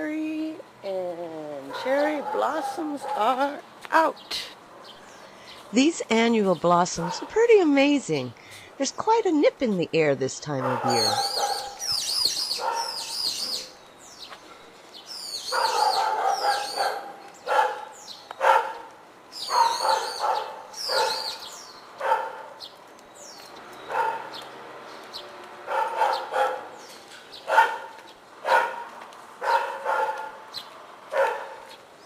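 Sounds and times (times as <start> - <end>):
dog barking: 1.7 - 3.3, 7.0 - 7.3, 10.6 - 13.1, 15.5 - 21.4, 22.0 - 22.6, 23.9 - 24.4, 25.7 - 26.8, 27.4 - 30.5, 31.1 - 31.8
bird chirping: 9.9 - 18.6, 19.3 - 25.4.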